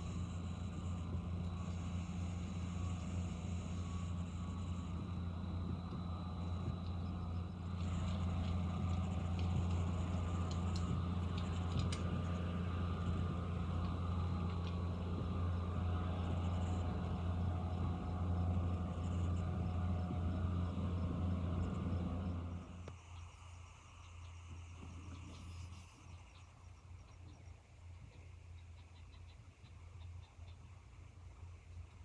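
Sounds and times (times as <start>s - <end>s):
light ticks or rattles: 0.0s - 22.2s
motor vehicle droning: 0.0s - 23.3s.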